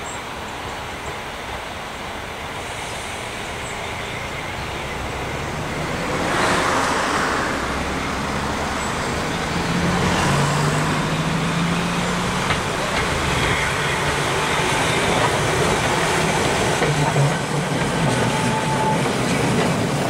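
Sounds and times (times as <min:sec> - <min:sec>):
vehicle passing by: 0:05.3 - 0:12.5.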